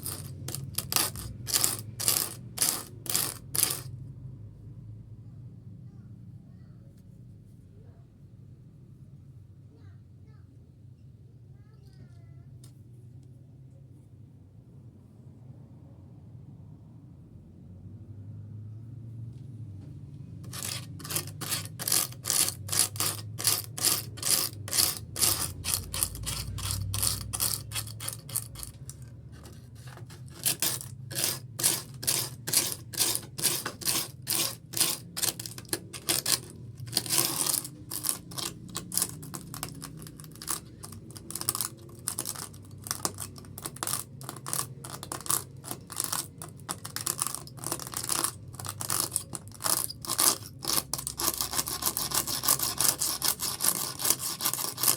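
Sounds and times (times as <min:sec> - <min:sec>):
hand sanding strokes: 0:20.5 - 0:28.7.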